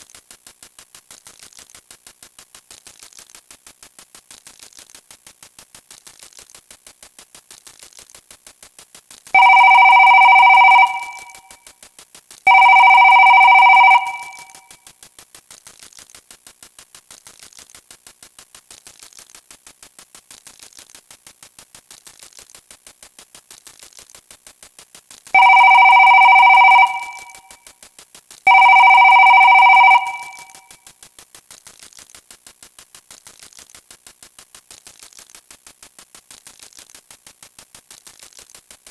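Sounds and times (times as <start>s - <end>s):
telephone ringing: 9.4s - 11.4s, 12.5s - 14.6s, 25.4s - 27.5s, 28.5s - 30.6s.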